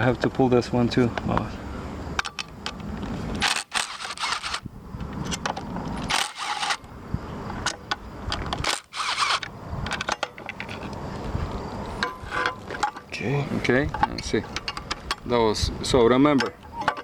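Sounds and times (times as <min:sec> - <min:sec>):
rattling scrapes: 0:11.9 - 0:13.1.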